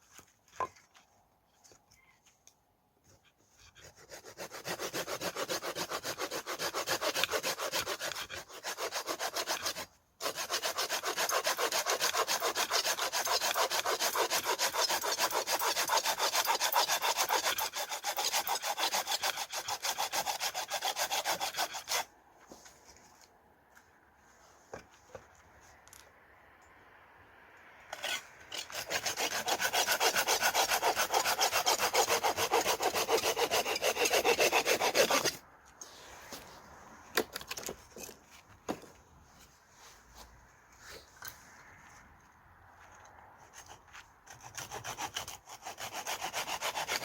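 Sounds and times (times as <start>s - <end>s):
hand saw cutting wood: 3.6s - 22.1s, 27.9s - 35.4s, 43.4s - 47.0s.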